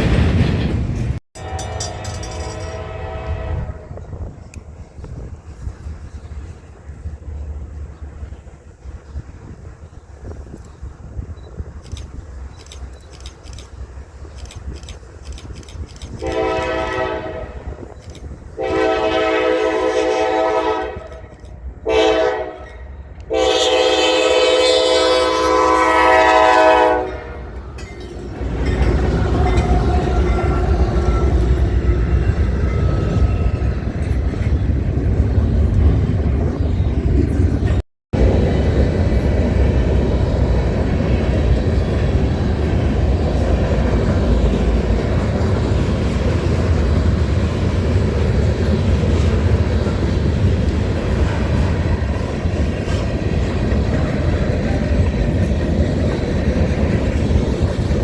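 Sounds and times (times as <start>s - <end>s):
train rolling past: 0.0s - 58.0s
locomotive horn: 1.4s - 4.2s, 16.2s - 17.8s, 18.6s - 27.6s.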